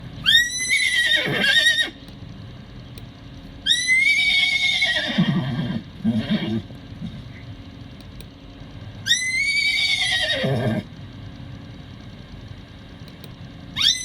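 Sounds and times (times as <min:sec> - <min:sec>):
horse whinnying high-pitched: 0:00.3 - 0:02.0, 0:03.7 - 0:06.6, 0:09.1 - 0:10.8.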